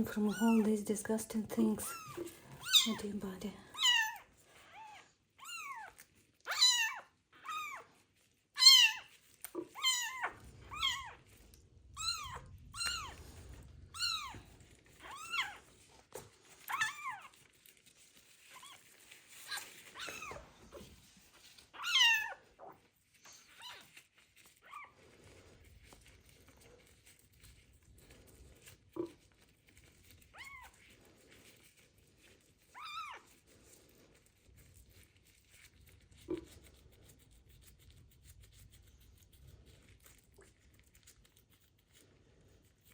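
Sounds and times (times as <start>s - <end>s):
kitten meowing: 1.9s - 3.0s, 3.7s - 7.9s, 8.6s - 11.2s, 12.0s - 13.2s, 13.9s - 15.6s, 21.8s - 22.8s.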